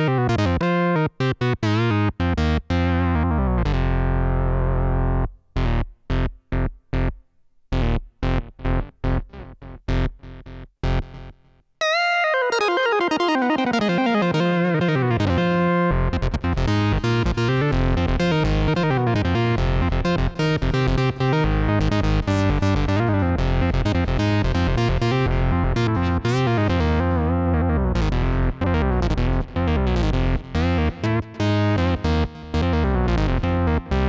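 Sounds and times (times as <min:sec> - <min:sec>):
sequenced synth pattern with bass: 0:07.8 - 0:34.0
synthesizer pitch glide: 0:11.8 - 0:16.0.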